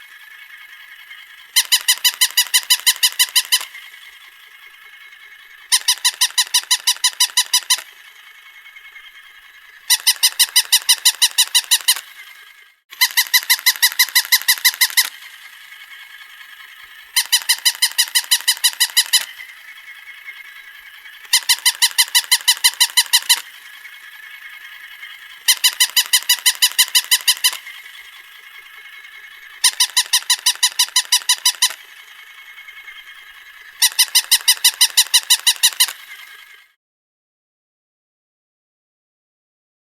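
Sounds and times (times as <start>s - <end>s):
toy dog electronic barks: 1.6s - 3.8s, 5.7s - 7.9s, 9.9s - 12.0s, 13.0s - 15.3s, 17.1s - 19.4s, 21.3s - 23.5s, 25.5s - 27.7s, 29.6s - 31.8s, 33.8s - 36.0s.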